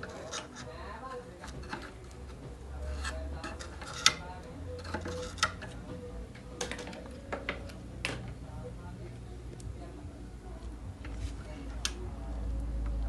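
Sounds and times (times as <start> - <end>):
low steady hum: 0.0 - 13.0
tools clicking and tapping: 4.8 - 5.8.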